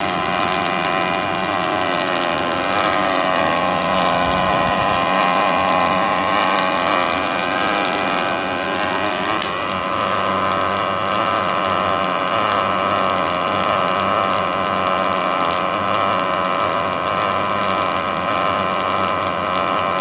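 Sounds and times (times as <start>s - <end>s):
welding machine steady noise: 0.0s - 20.0s.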